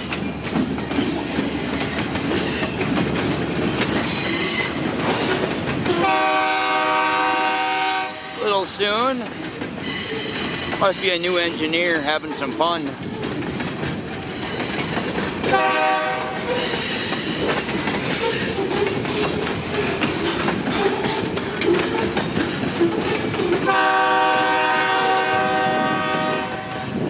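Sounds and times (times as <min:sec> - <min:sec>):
train rumble and clickety-clack: 0:00.0 - 0:27.0
locomotive horn blasts: 0:05.9 - 0:08.5, 0:15.5 - 0:16.5, 0:23.7 - 0:27.0.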